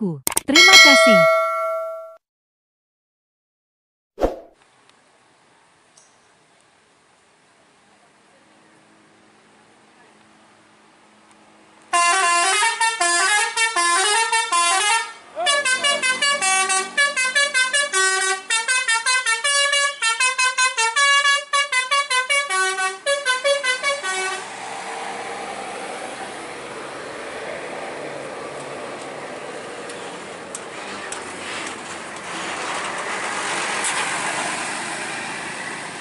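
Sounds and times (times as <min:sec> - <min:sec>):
bus musical horn tune: 0:11.9 - 0:24.5
vehicle noise rushing: 0:15.2 - 0:18.6, 0:23.8 - 0:36.0.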